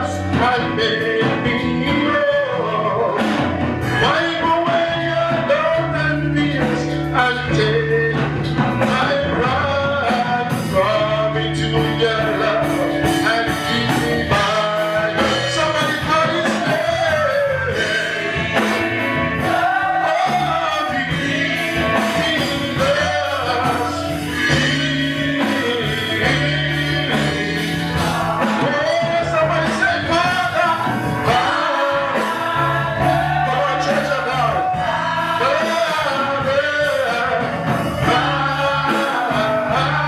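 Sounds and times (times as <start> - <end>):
gospel band playing: 0.0 - 40.0
voices singing: 0.0 - 40.0.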